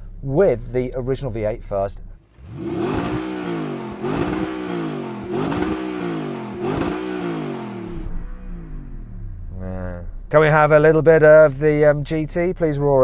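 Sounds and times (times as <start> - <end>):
engine revving: 2.2 - 10.9.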